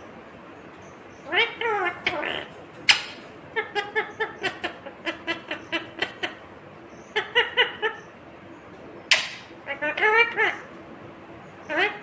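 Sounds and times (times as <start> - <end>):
parakeet chattering: 1.1 - 8.1, 9.1 - 10.8, 11.6 - 12.0.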